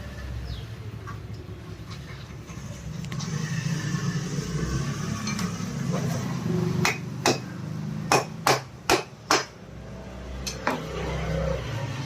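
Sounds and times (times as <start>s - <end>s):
sharp metal taps and knocks: 8.1s - 9.6s, 10.4s - 10.9s.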